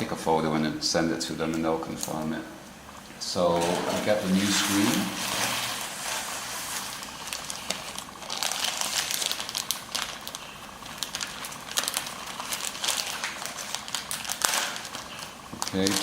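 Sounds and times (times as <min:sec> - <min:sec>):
plastic packaging crinkling: 0:03.6 - 0:16.0.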